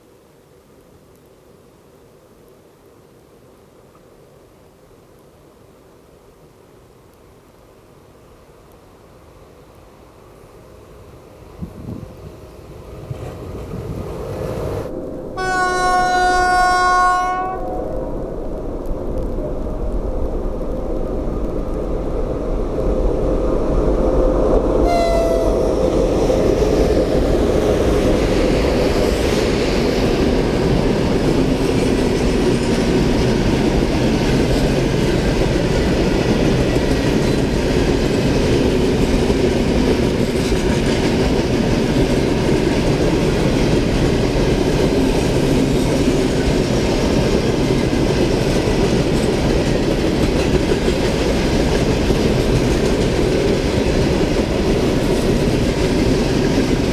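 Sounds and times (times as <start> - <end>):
train wheels rumbling on rails: 11.0 - 56.9
train horn: 14.2 - 21.0, 24.7 - 28.0.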